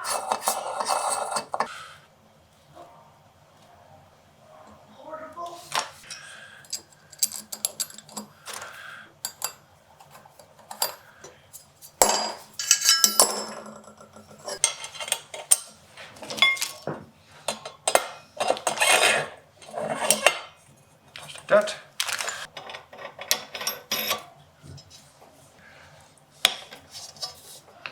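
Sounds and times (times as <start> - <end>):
small metal parts clinking: 6.0 - 11.0, 12.0 - 16.8, 21.2 - 24.3.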